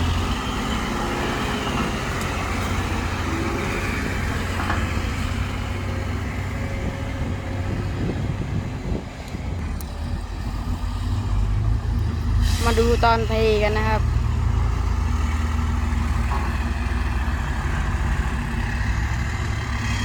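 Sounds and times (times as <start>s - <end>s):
heavy diesel engine under load: 0.0s - 20.0s.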